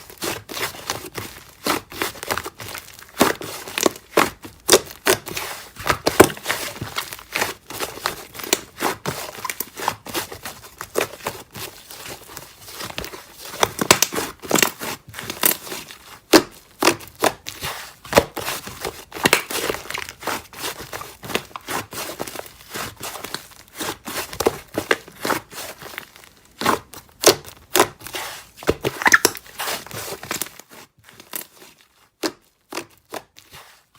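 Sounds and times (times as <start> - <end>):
slime crackling pops and clicks: 29.0 - 29.4.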